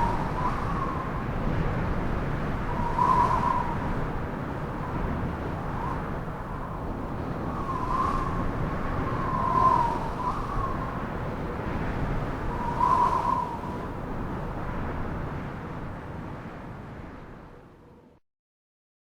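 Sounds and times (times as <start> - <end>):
high wavering wind whistle: 0.0 - 14.6
wind rumbling on microphone: 0.0 - 18.2.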